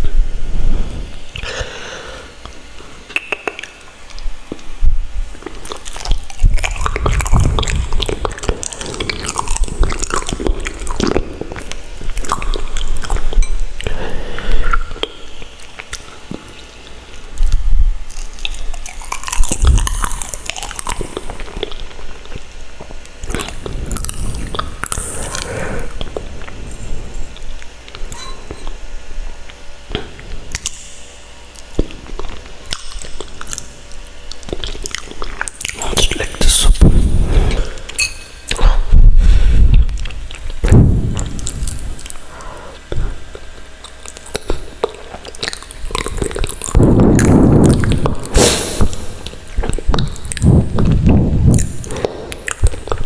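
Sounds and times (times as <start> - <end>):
wet mouth clicks and smacks: 2.4 - 4.7, 5.3 - 14.0, 17.4 - 22.5, 29.4 - 33.7, 39.8 - 53.0
close chewing and biting: 5.3 - 53.0
low thumps: 38.9 - 42.1, 46.7 - 53.0.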